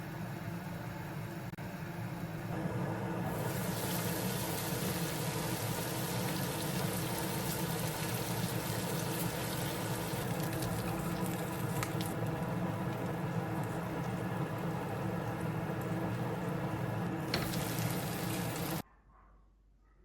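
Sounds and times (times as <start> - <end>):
food sizzling on stove: 2.6 - 18.8.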